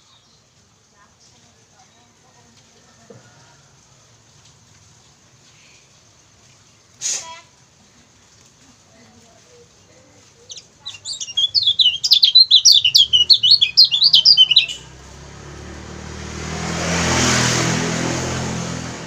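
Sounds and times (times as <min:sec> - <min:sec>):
bird rapid high chirps: 0:10.5 - 0:15.0.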